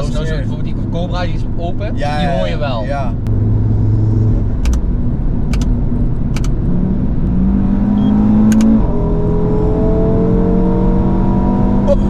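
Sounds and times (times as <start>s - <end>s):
car engine accelerating: 0.0s - 12.0s
short sharp clicks: 5.5s - 5.8s, 6.4s - 6.6s, 8.5s - 8.7s.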